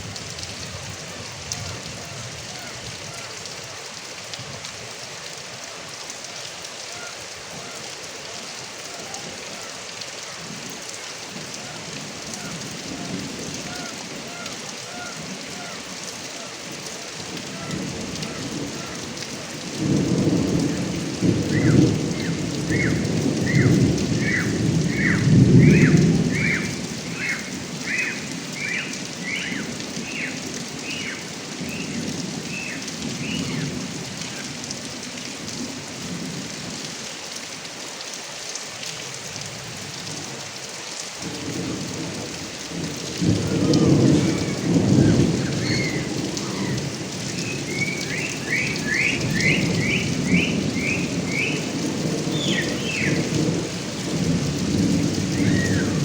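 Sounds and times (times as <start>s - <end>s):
heavy rain falling: 0.0s - 56.0s
thunder rumbling: 17.5s - 34.1s, 41.2s - 56.0s.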